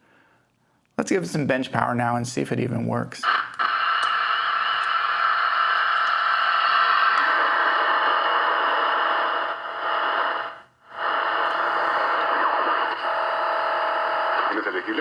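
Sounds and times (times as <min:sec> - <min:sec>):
radio static hiss: 0:01.0 - 0:15.0.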